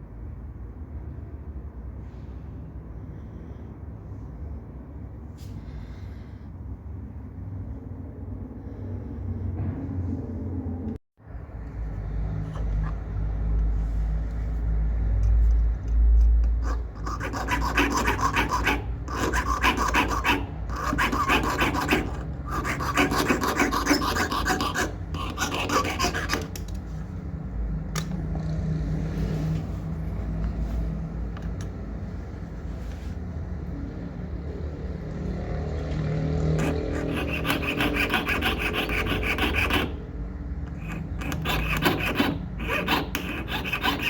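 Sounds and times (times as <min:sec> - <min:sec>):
hand file rasping on metal: 0:16.6 - 0:26.5, 0:36.6 - 0:40.0, 0:40.7 - 0:44.0.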